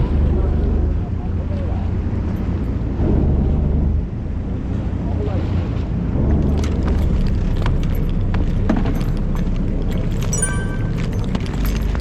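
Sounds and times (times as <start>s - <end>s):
brief high-pitched tone: 10.4s - 11.3s.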